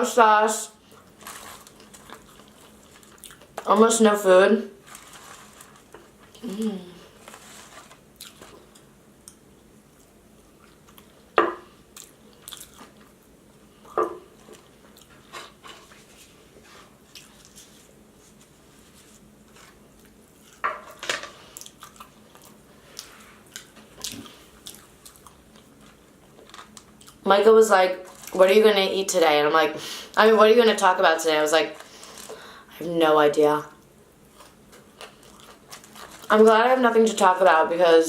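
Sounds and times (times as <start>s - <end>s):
biting and chewing crunchy food: 0.9s - 3.7s, 7.1s - 15.6s, 17.0s - 17.9s, 19.4s - 27.2s, 34.2s - 36.5s.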